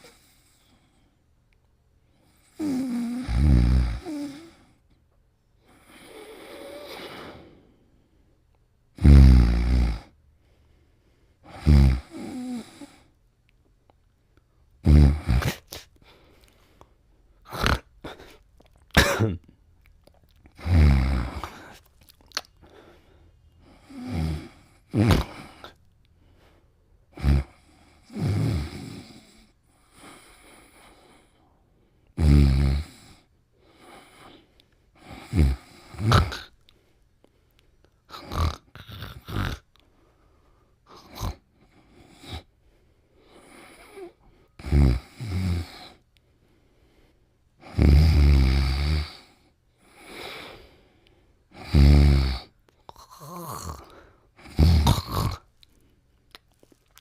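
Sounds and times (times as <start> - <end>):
person snoring: 2.4 - 4.7, 5.7 - 7.6, 9.0 - 10.2, 11.5 - 13.1, 14.8 - 15.8, 17.4 - 18.4, 20.5 - 21.9, 23.6 - 25.8, 27.1 - 31.1, 32.2 - 34.3, 35.0 - 36.5, 38.1 - 39.7, 40.9 - 42.5, 43.3 - 46.0, 47.6 - 50.6, 51.5 - 55.5.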